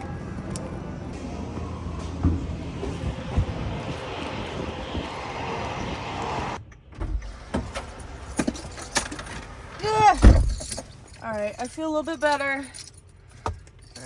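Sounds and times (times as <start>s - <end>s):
vehicle background noise: 0.0s - 14.0s.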